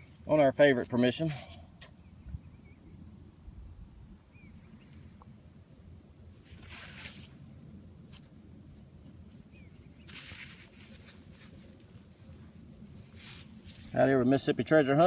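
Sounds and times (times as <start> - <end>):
steady low rumble: 0.0 - 15.0
scraping rustles: 6.4 - 8.4, 9.0 - 14.0.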